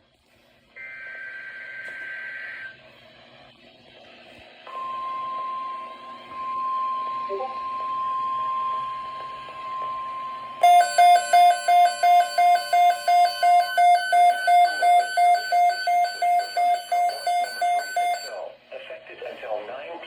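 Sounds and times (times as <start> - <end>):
alarm beeping: 0.8 - 2.8, 4.7 - 18.6
steady warning alarm tone: 0.8 - 2.8, 4.7 - 18.6.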